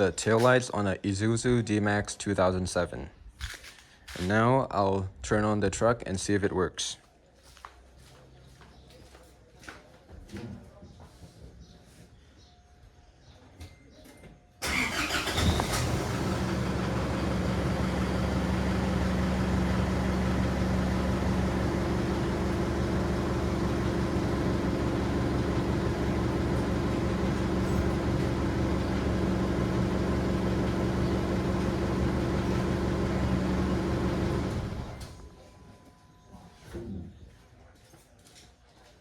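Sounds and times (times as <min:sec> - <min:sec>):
engine starting: 0:14.6 - 0:18.0, 0:27.6 - 0:28.3
engine idling: 0:14.6 - 0:35.2.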